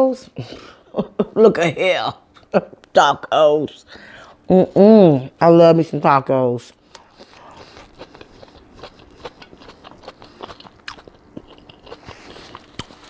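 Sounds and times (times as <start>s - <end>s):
chewing with small crunches: 6.8s - 13.0s.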